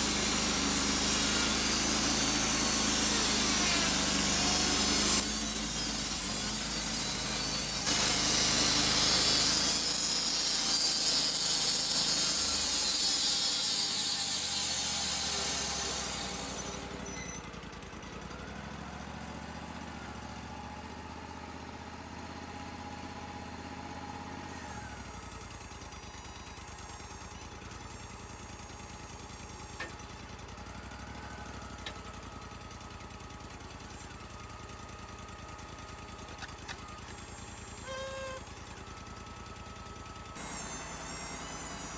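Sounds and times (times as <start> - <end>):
bandsaw blade cutting log: 0.0 - 17.4, 24.5 - 32.7, 33.4 - 34.8, 35.7 - 39.4, 40.2 - 41.9
sawmill engine running: 0.0 - 41.9.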